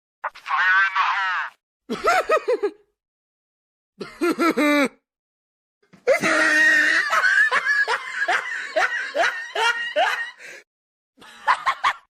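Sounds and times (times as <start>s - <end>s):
snickering laugh: 4.0s - 5.0s.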